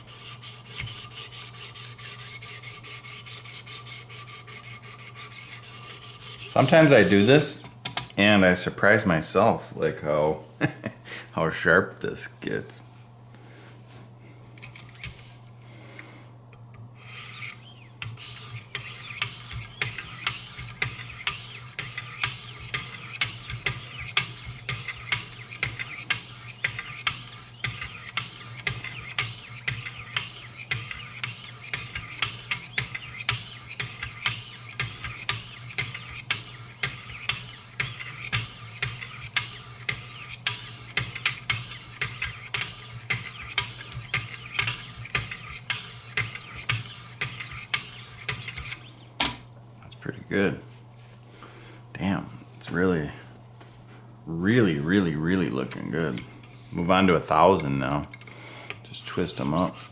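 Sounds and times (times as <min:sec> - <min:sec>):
knife rasping on sharpening stones: 0:00.1 - 0:07.5, 0:17.0 - 0:48.8, 0:59.1 - 0:59.9.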